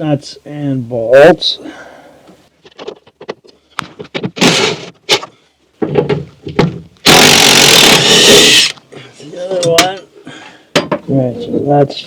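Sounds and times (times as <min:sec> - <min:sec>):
loud harsh scraping rattle: 0:07.1 - 0:08.8
short scraping bursts: 0:07.1 - 0:08.8.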